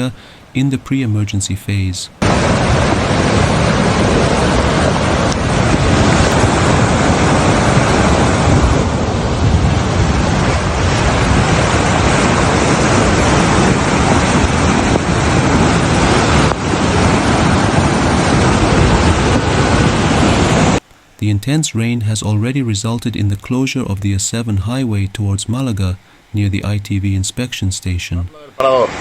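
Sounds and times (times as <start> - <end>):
flooded river rushing: 0.0 - 20.8, 28.3 - 29.0
wind on microphone: 2.2 - 20.8.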